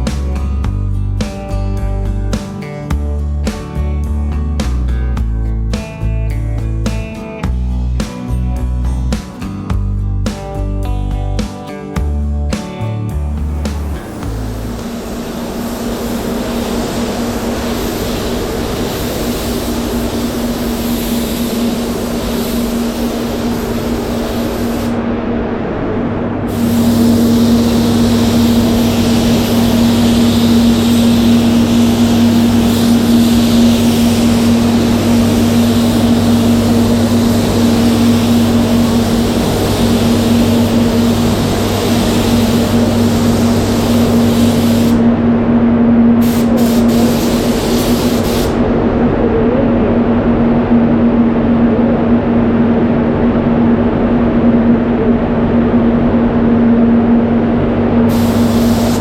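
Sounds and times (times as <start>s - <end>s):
extraction fans humming: 11.5s - 59.0s
spray gun hissing: 13.1s - 25.0s, 26.5s - 45.1s, 46.2s - 48.6s, 58.1s - 59.0s.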